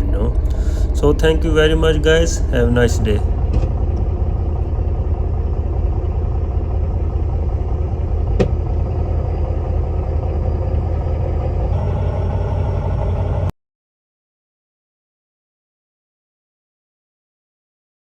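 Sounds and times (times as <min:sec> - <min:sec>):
truck diesel engine idling: 0:00.0 - 0:13.5.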